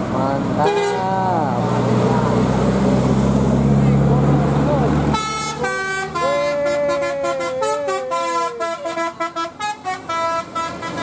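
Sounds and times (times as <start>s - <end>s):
bus melodic horn playing tune: 0.6s - 1.1s, 5.1s - 11.0s.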